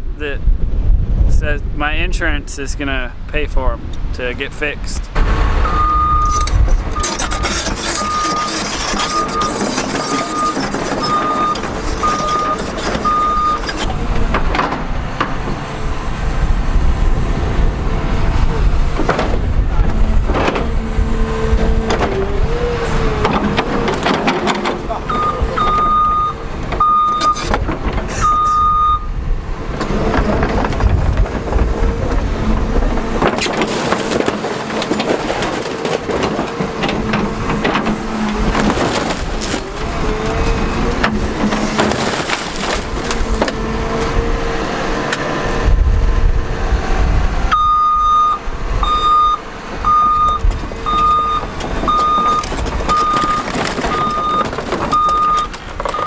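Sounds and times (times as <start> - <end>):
excavator engine running: 2.7 - 56.0
travel alarm beeping: 5.6 - 13.7, 25.1 - 27.4, 28.2 - 29.1, 47.5 - 56.0.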